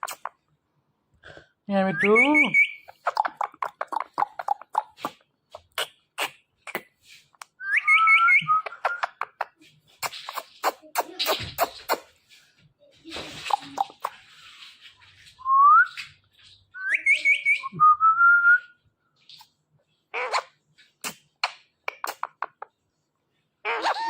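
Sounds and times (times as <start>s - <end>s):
parrot whistling: 7.6s - 9.2s.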